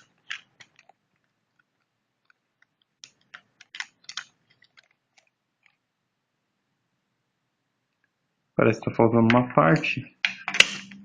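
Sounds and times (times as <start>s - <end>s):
plastic parts clicking together: 0.0s - 5.8s, 10.2s - 11.0s.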